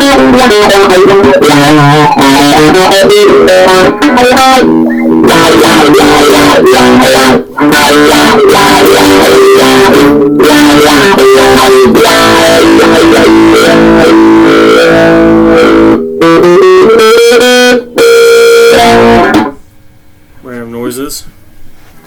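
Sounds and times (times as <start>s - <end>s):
distorted electric guitar: 0.0s - 20.4s.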